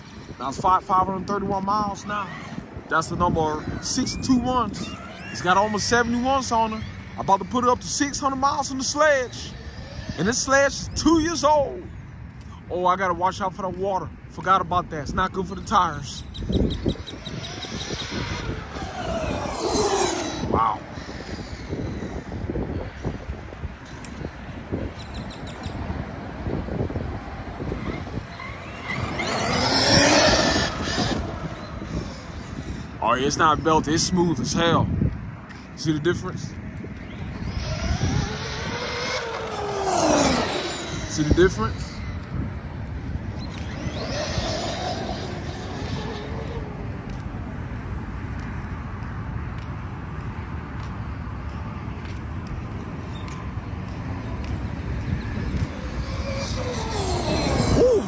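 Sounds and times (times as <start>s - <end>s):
toy truck rumbling on pavement: 1.0s - 11.0s, 16.7s - 23.1s, 27.8s - 34.6s, 37.0s - 47.6s, 55.2s - 58.0s
electric motor whining: 16.9s - 22.9s, 28.0s - 33.0s, 37.0s - 47.2s, 55.0s - 58.0s
toy truck rumbling over ground: 28.5s - 31.4s, 37.4s - 41.8s, 55.8s - 58.0s.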